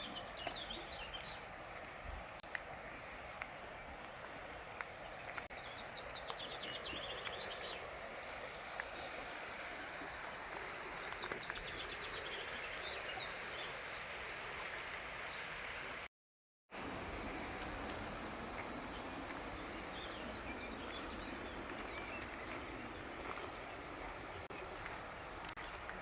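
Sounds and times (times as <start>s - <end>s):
birds singing: 0.0s - 1.6s, 3.8s - 15.7s, 18.2s - 24.8s
river and waterfall rushing: 0.0s - 16.0s, 16.8s - 26.0s.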